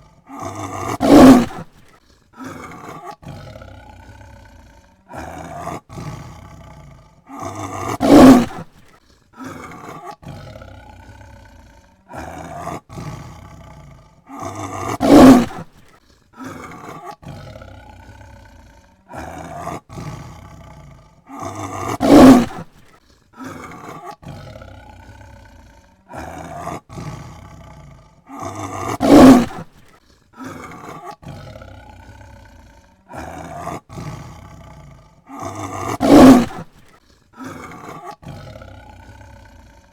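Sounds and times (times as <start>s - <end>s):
tiger roaring: 0.0s - 39.9s
tiger short calls: 0.2s - 1.7s, 7.4s - 8.7s, 14.4s - 15.7s, 21.4s - 22.7s, 28.4s - 29.7s, 35.4s - 36.7s.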